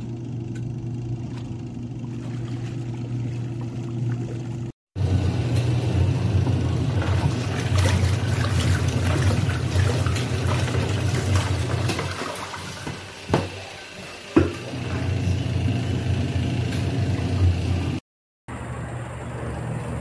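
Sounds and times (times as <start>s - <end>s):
washing machine motor hum: 0.0s - 20.0s
water churning and sloshing: 1.2s - 4.8s, 6.4s - 14.8s.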